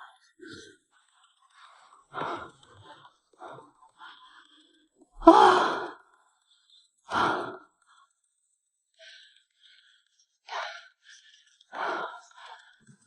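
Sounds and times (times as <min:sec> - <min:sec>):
woman gasping and breathing hard: 0:05.2 - 0:06.1.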